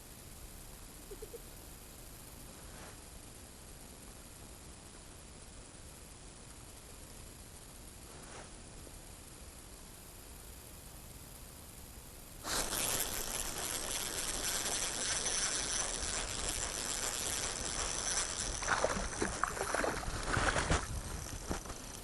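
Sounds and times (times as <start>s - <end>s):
water running: 13.8s - 20.7s
water splashes: 18.6s - 20.9s.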